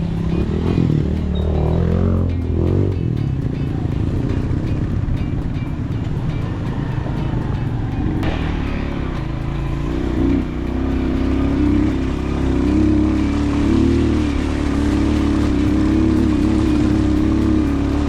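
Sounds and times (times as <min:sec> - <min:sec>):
motorcycle engine revving: 0:00.0 - 0:18.0
low rumble: 0:07.9 - 0:18.0.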